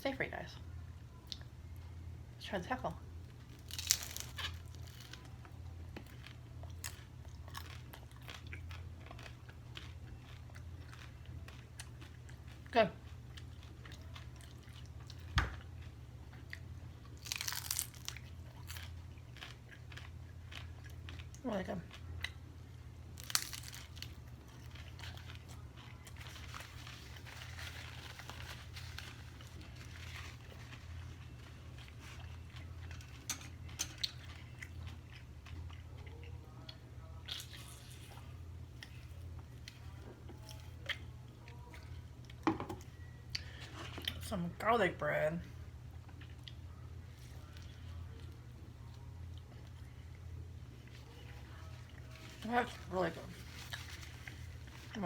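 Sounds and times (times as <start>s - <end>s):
steady low hum: 0.0s - 55.0s
person chewing crunchy food: 3.4s - 44.2s.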